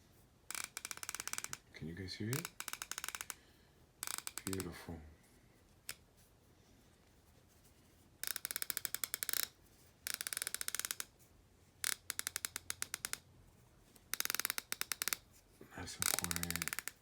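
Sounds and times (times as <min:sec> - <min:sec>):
ratchet pawl clicking rapidly: 0:00.5 - 0:01.6, 0:02.3 - 0:03.4, 0:04.0 - 0:04.7, 0:08.2 - 0:09.5, 0:10.1 - 0:11.1, 0:11.8 - 0:13.2, 0:14.1 - 0:15.2, 0:16.0 - 0:17.0.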